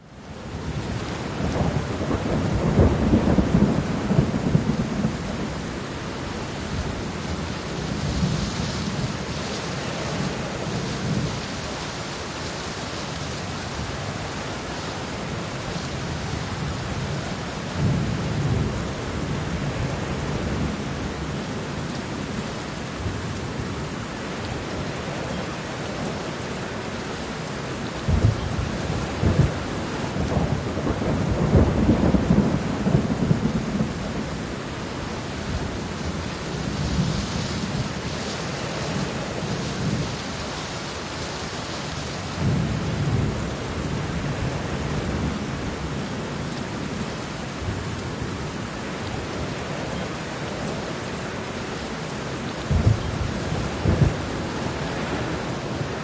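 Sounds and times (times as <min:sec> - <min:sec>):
steady rain: 0:00.0 - 0:56.0
rolling thunder: 0:00.6 - 0:09.4, 0:28.0 - 0:38.1, 0:42.3 - 0:48.5, 0:52.6 - 0:56.0
sharp thunderclap: 0:28.1 - 0:29.6, 0:52.6 - 0:54.3.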